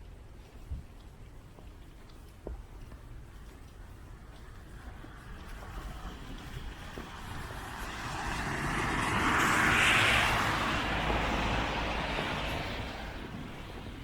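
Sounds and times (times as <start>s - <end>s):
car tyres hissing on snow: 5.8s - 14.0s.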